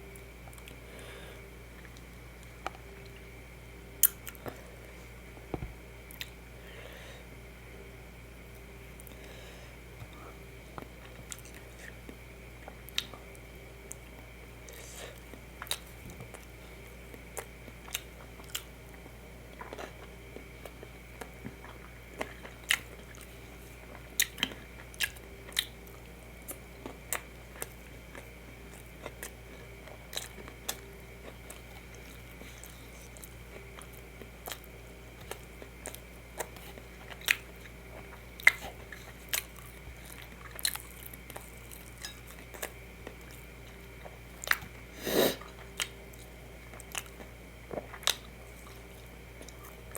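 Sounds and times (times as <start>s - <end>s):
faint steady hum: 0.0s - 49.9s
person chewing: 6.1s - 6.4s, 10.8s - 49.9s.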